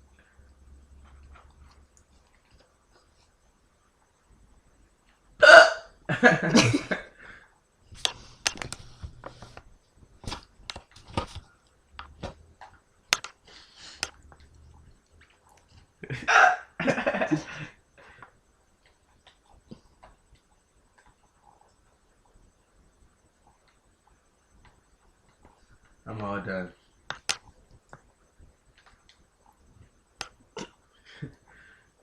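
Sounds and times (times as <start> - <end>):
person hiccuping: 5.4 - 6.0, 16.1 - 16.8.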